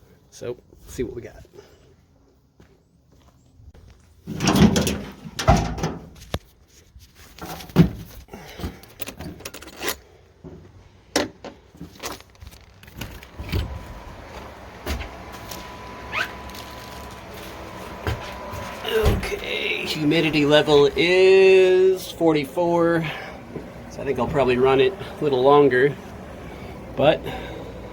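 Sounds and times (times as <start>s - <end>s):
footsteps stepping inside: 2.2s - 4.6s, 11.6s - 27.9s
dehumidifier hum with faint whine: 13.1s - 27.9s.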